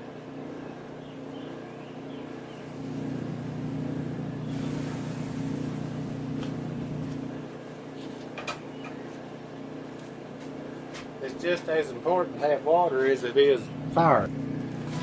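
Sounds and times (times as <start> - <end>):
forge humming: 0.0 - 15.0
water sizzling on hot steel: 2.4 - 8.2.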